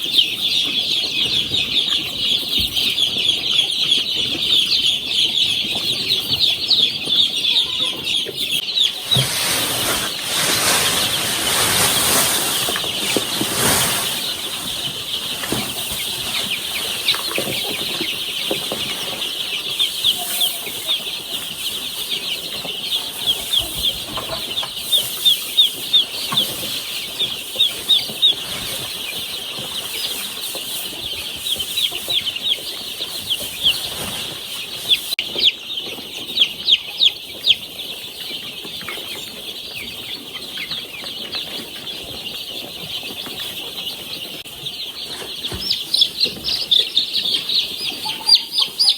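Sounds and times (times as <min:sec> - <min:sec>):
chicks peeping: 0:00.0 - 0:48.9.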